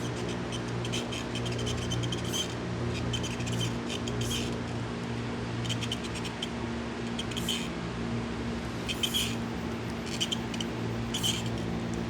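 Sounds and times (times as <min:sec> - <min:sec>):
brush scrubbing metal: 0:00.0 - 0:04.6
fan humming: 0:00.0 - 0:12.0.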